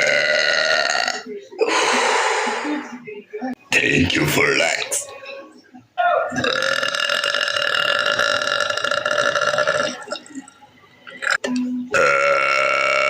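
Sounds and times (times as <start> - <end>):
woman belching: 0.0 - 1.9, 6.0 - 10.4, 11.2 - 13.0.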